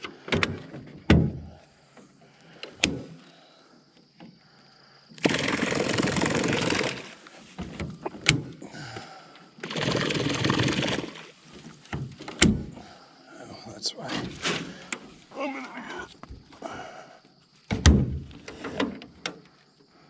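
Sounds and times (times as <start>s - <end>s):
knocks and bumps in a boat: 0.3s - 1.6s.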